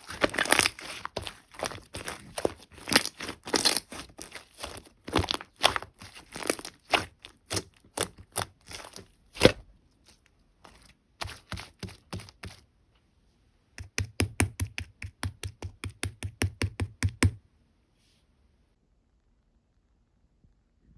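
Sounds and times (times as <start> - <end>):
slime squishing and popping: 0.0 - 9.7, 10.7 - 12.6.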